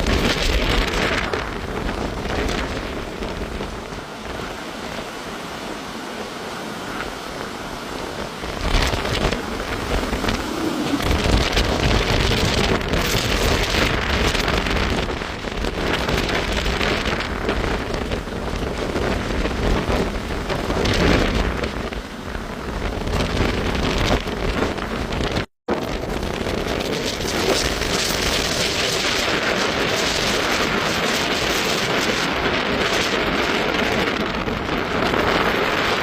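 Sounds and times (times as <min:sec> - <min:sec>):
heavy rain rushing: 0:00.0 - 0:21.9
gusting wind on microphone: 0:00.0 - 0:36.0.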